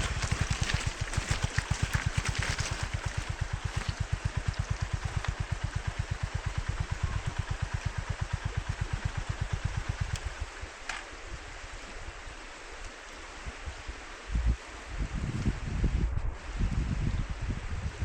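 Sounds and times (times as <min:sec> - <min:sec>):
motorcycle engine idling: 0:00.0 - 0:10.8.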